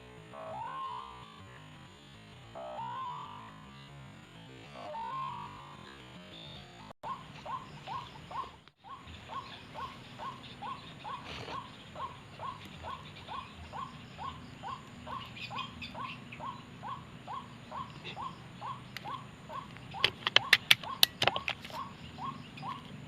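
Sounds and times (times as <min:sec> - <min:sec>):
bird calling falling notes: 0:00.4 - 0:01.4, 0:04.8 - 0:05.9, 0:07.0 - 0:23.0.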